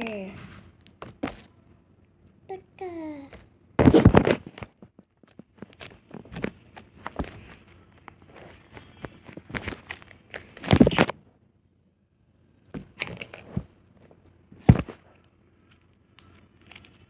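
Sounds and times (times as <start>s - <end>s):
slime squelching: 14.6s - 17.0s.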